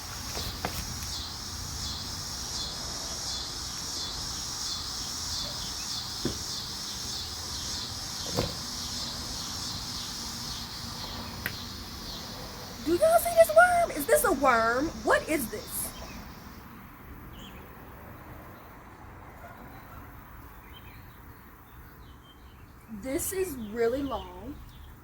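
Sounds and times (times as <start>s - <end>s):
insects pulsing chorus: 0.0s - 19.1s.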